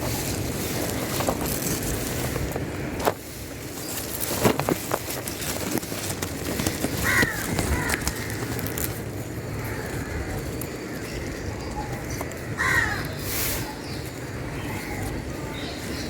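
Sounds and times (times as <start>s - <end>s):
broom sweeping the ground: 0.0s - 6.2s, 12.6s - 16.0s.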